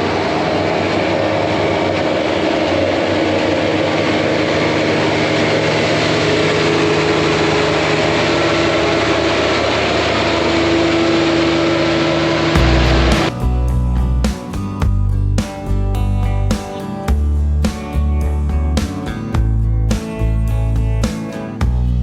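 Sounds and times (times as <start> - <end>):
steady higher tone: 0.0 - 16.2
tractor engine running: 0.0 - 22.0.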